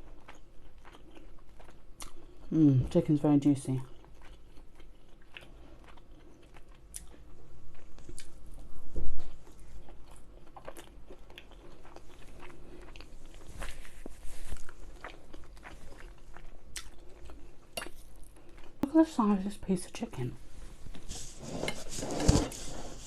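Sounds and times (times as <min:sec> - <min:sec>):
person chewing food: 0:00.0 - 0:02.5, 0:03.8 - 0:18.8.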